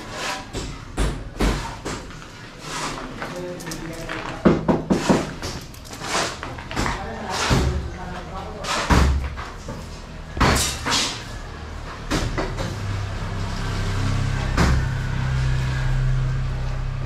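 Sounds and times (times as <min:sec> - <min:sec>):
sharp knocks and scrapes: 0:00.0 - 0:12.9.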